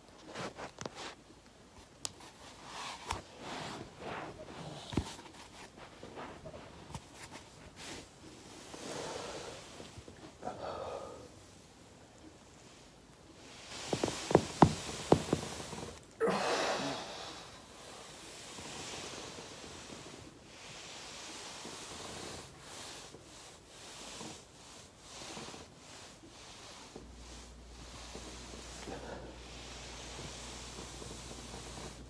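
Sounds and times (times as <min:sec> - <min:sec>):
soft rustling: 0:00.0 - 0:16.2, 0:17.5 - 0:32.0
spinal joints popping: 0:13.8 - 0:16.0.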